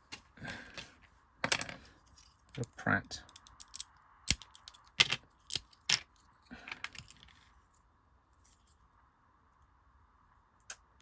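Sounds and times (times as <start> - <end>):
plastic bricks clicking: 2.5 - 7.4.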